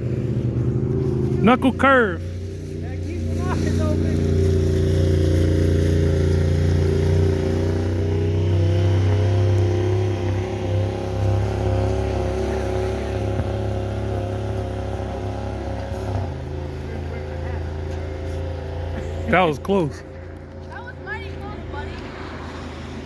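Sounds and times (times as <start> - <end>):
engine humming steadily: 0.0 - 23.0.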